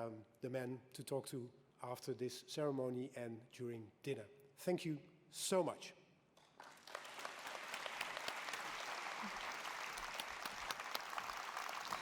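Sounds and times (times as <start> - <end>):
audience applauding: 6.6 - 12.0.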